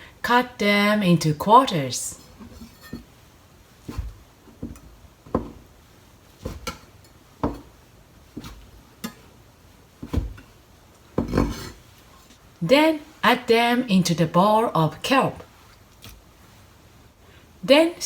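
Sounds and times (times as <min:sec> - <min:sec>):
knife knocking on cutting board: 0:04.6 - 0:05.6.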